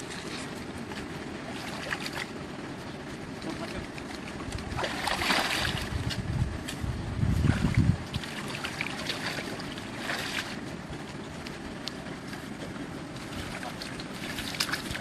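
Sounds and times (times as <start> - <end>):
water noise: 0.0 - 15.0
wind noise: 4.3 - 11.7.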